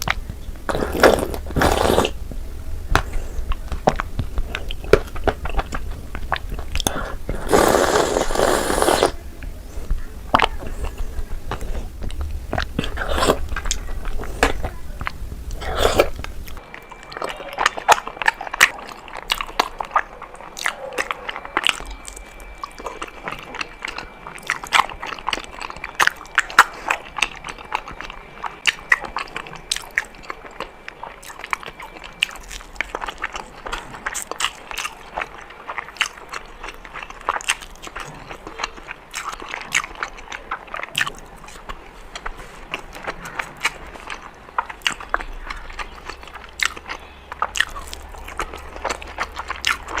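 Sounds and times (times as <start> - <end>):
low background hum: 0.0 - 50.0
chewing mouth clicks and smacks: 17.9 - 50.0.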